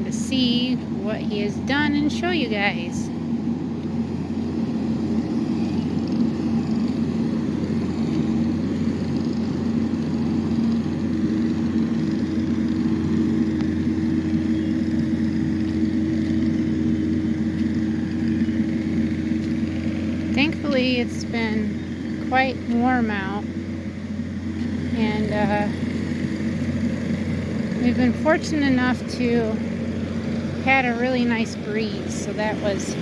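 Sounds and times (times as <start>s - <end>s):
engine humming: 0.0s - 33.0s.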